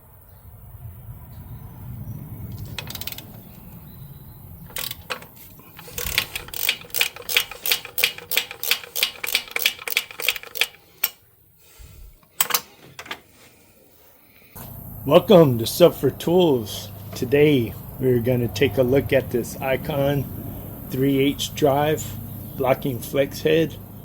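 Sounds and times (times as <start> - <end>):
ratchet pawl clicking: 2.7 - 3.4, 4.7 - 11.2.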